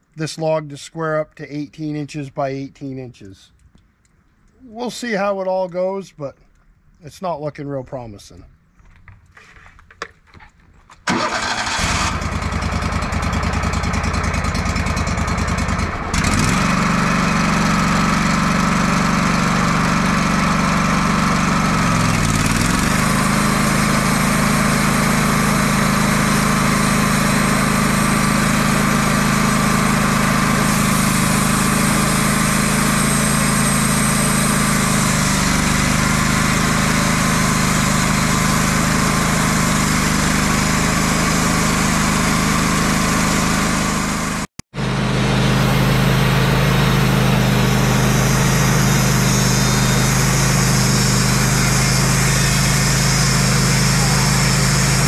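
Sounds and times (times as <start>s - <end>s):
sawmill engine running: 11.1s - 55.0s.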